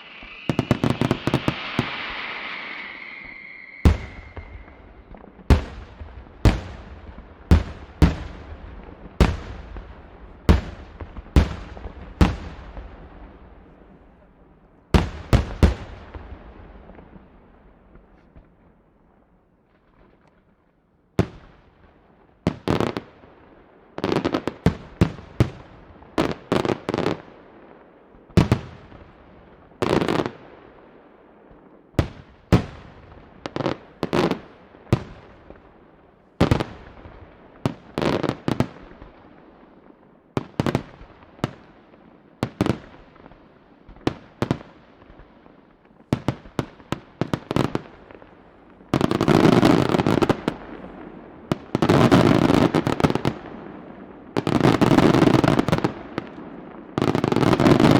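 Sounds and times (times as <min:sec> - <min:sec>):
firework shell bursts echoing: 0:00.0 - 0:06.6.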